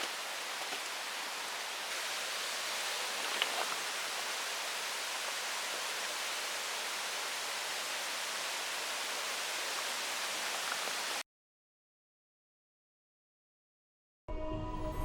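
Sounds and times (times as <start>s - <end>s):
rushing outdoor ambience hiss: 0.0s - 11.2s.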